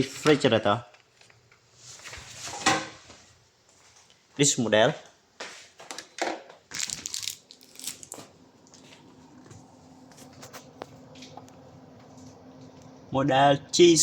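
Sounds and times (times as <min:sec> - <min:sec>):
faint steady hum: 0:00.0 - 0:14.0
crinkling rustling handling noise: 0:05.6 - 0:11.4.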